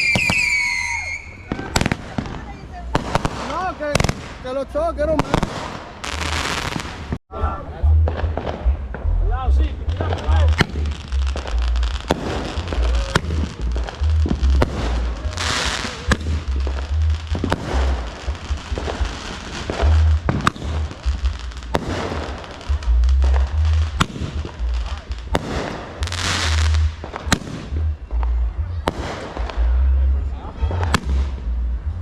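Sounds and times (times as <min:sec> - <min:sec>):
firework bangs: 0:00.0 - 0:07.2, 0:09.8 - 0:30.0, 0:30.8 - 0:31.5
hissing crackling firework bursts: 0:00.0 - 0:07.2, 0:10.0 - 0:27.8
music with heavy bass: 0:04.7 - 0:32.0.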